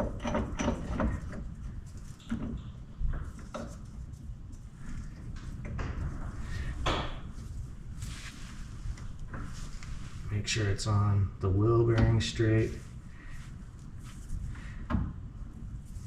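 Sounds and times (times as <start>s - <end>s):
metal clinks and knocks: 0.0s - 1.5s.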